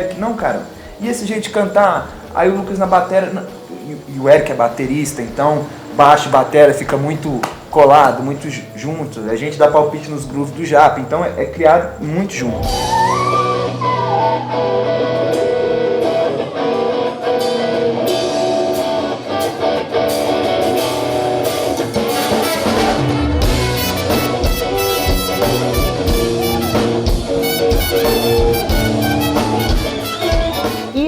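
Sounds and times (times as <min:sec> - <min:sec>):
guitar and horn chords: 0:01.6 - 0:31.0
drum kit and bass: 0:12.4 - 0:13.6, 0:20.1 - 0:31.0.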